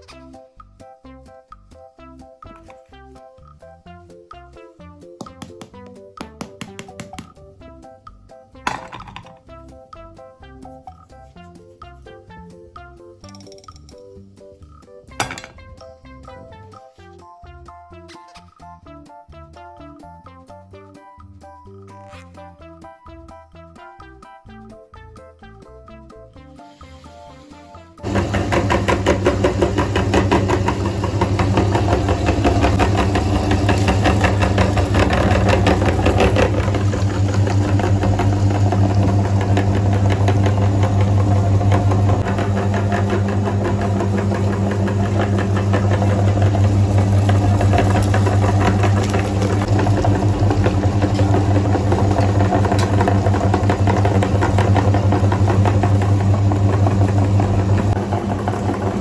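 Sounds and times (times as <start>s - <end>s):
electric meat grinder running: 28.0s - 59.0s.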